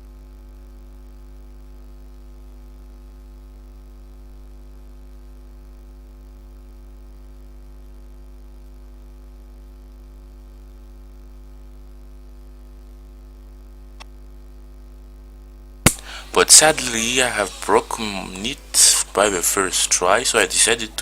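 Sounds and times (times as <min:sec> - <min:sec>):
electrical mains hum: 0:15.9 - 0:21.0.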